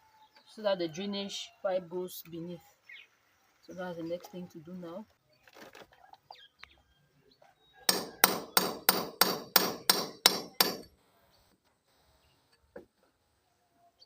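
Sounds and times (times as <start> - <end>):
hammer striking chisel: 7.9 - 10.9.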